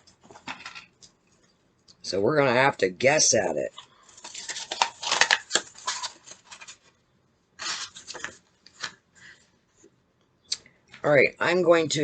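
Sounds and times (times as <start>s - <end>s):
packaging rustling: 4.0s - 7.0s, 7.6s - 9.0s.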